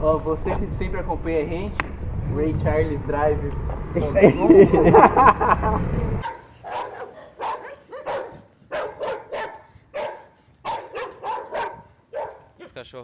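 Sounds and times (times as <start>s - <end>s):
dogs barking: 6.2s - 12.8s.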